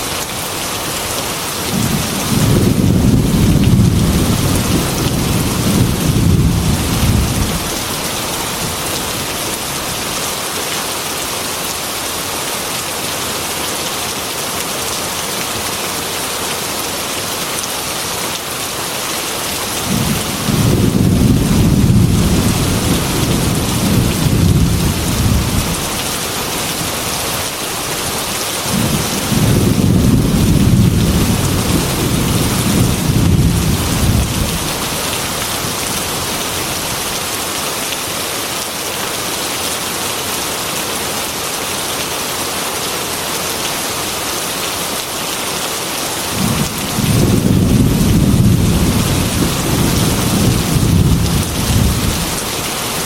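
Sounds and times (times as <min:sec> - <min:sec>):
thunder rumbling: 0:01.7 - 0:09.1, 0:19.8 - 0:26.0, 0:28.7 - 0:36.4, 0:46.4 - 0:52.4.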